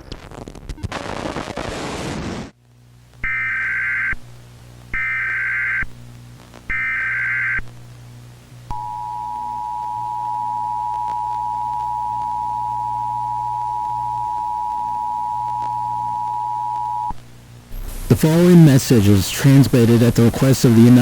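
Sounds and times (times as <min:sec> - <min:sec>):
hissing static: 0:00.0 - 0:09.0, 0:15.2 - 0:21.0
low hum: 0:07.9 - 0:21.0
data header bursts: 0:17.7 - 0:21.0.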